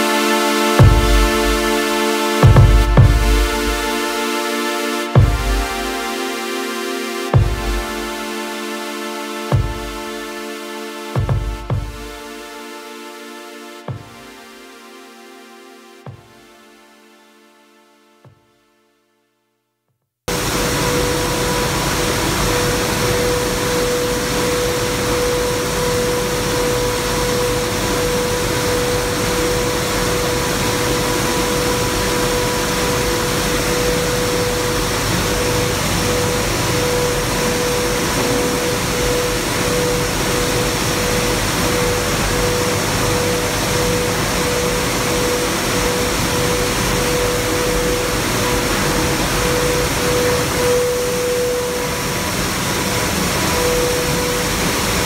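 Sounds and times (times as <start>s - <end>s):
machine hum: 0.8s - 4.1s, 20.3s - 55.0s.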